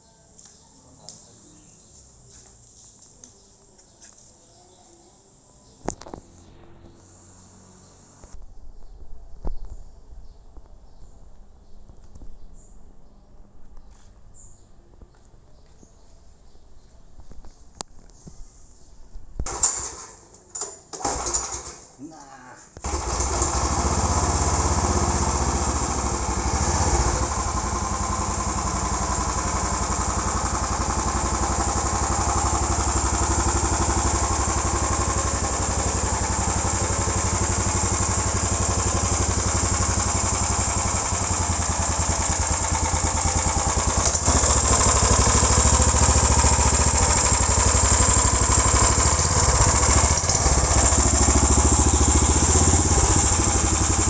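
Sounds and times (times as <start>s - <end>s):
small generator engine running: 22.8s - 54.0s.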